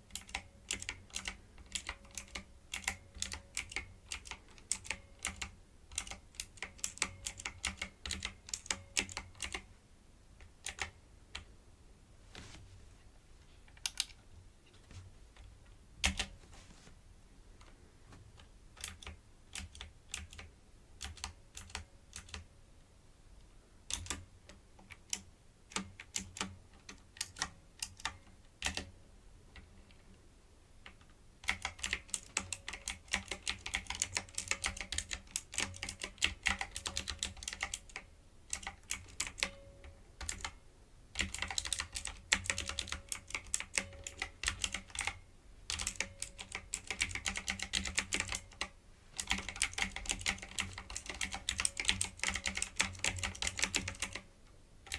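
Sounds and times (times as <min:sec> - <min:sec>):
keyboard keys clacking: 0:31.5 - 0:40.5, 0:41.2 - 0:54.2.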